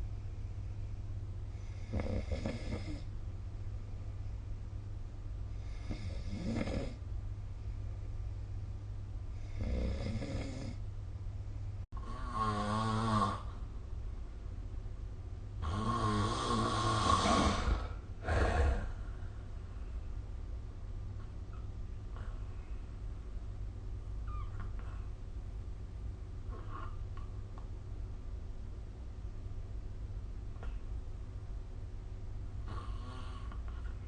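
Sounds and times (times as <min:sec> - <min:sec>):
steady low hum: 0:00.0 - 0:34.0
person snoring: 0:12.0 - 0:13.6, 0:15.6 - 0:19.1.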